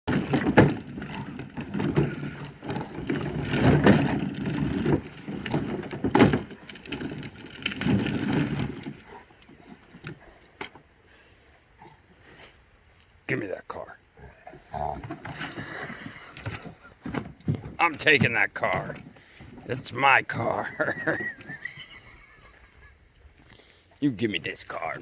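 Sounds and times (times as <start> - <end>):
toy car knocking and scraping: 0.1 - 10.8, 15.0 - 21.8.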